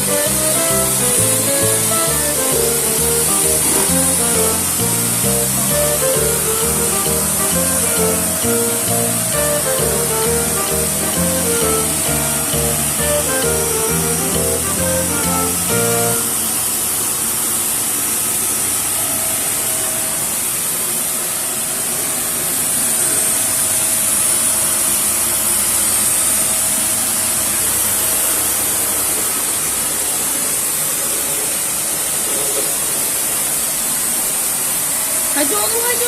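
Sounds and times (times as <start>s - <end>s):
toy vacuum cleaner motor running: 0.0s - 19.6s.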